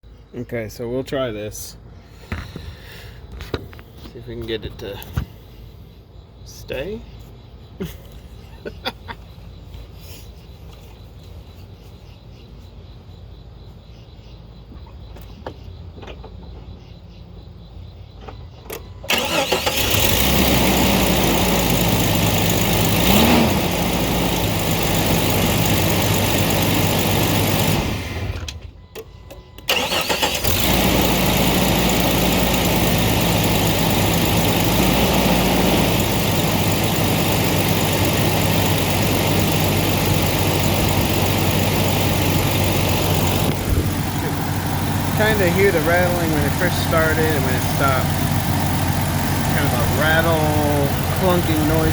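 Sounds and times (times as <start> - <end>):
car engine starting: 19.0 - 28.8, 29.6 - 51.9
car engine idling: 19.1 - 28.6, 29.7 - 51.9.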